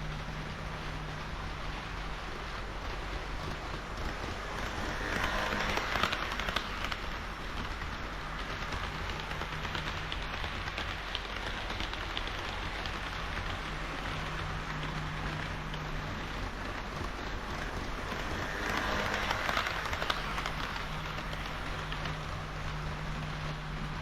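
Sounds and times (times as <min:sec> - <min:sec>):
model train running on track: 0:00.0 - 0:24.0.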